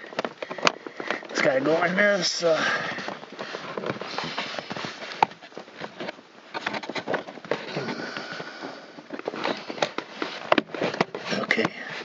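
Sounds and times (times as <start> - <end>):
plastic trim rustling and scraping: 0.0 - 12.0.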